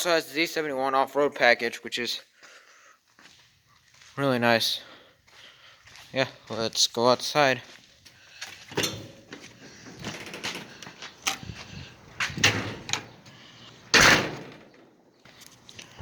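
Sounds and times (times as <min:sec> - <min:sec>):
door opening and closing: 0:08.7 - 0:11.5, 0:12.2 - 0:15.0.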